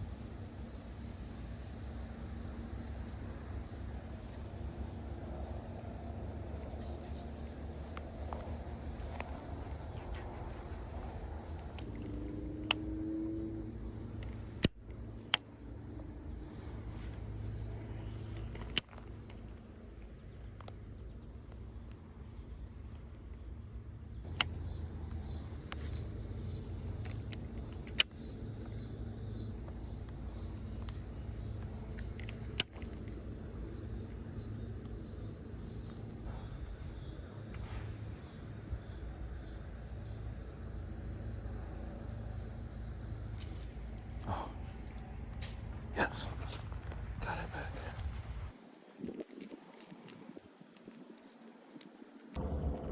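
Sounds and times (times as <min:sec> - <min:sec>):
steady low rumble: 0:00.0 - 0:49.0, 0:52.2 - 0:52.9
insects chirring: 0:00.0 - 0:52.9
sharp clicks: 0:06.5 - 0:13.0, 0:13.6 - 0:15.6, 0:16.8 - 0:22.0, 0:24.2 - 0:28.9, 0:29.7 - 0:33.4.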